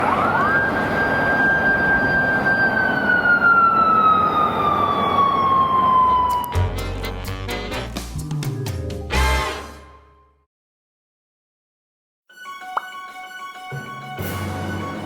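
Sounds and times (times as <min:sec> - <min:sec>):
road noise rush: 0:00.0 - 0:06.6
motorcycle siren wail: 0:00.0 - 0:06.8.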